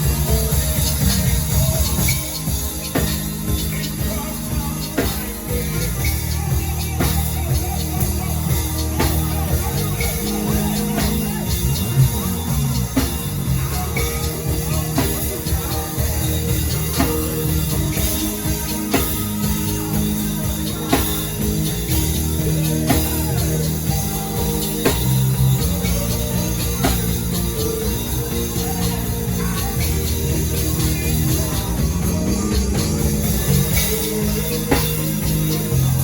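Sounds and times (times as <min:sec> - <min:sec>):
bass and guitar: 0:00.0 - 0:36.0
drum kit beat: 0:00.0 - 0:36.0
keyboard chords: 0:00.0 - 0:36.0
people singing: 0:00.0 - 0:36.0.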